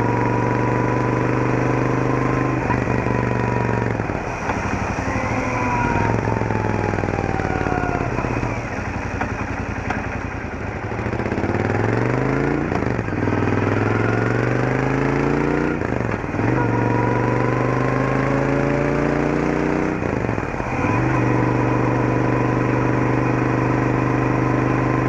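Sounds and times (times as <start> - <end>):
gear whine: 0.0 - 11.9
motorcycle engine accelerating: 0.0 - 25.0.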